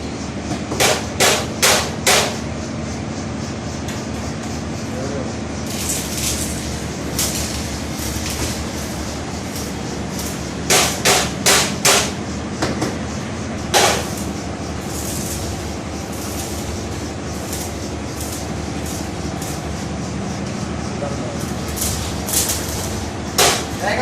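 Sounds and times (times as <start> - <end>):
hammer striking metal: 0.6 - 2.4, 10.2 - 13.0, 13.7 - 14.4, 23.4 - 23.8.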